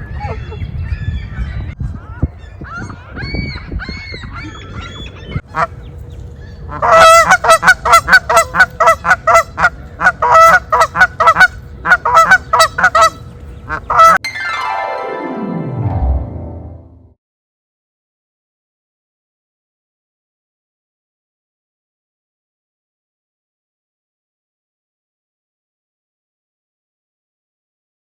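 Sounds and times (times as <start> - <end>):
geese honking: 3.9 - 14.2
falling sweep of tones: 14.2 - 17.1.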